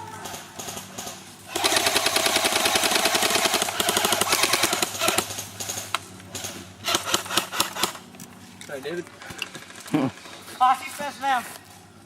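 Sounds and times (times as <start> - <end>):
airsoft gun full-auto burst: 0.6 - 5.3, 6.8 - 8.0.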